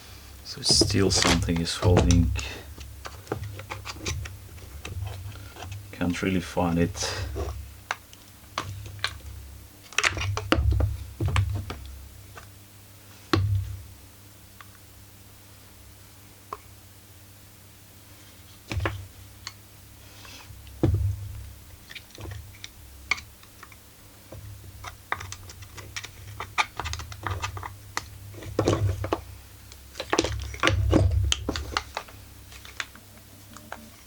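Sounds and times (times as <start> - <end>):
heavier knocks: 0.6 - 2.7, 20.8 - 21.5.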